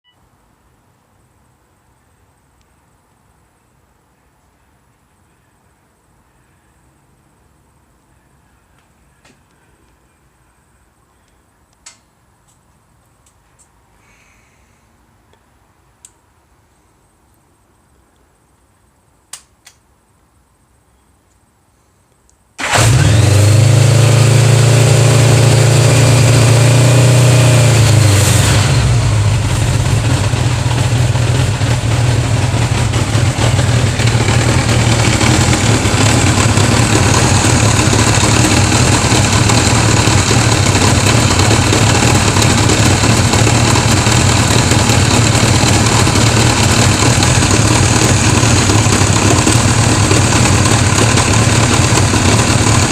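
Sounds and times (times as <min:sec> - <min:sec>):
motorcycle engine starting and idling: 0:22.6 - 0:52.9.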